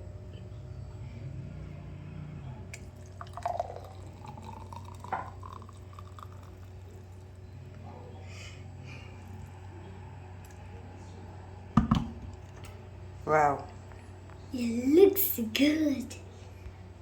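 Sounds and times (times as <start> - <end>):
low steady hum: 0.0 - 17.0
smoothie pouring into a glass: 2.8 - 7.5.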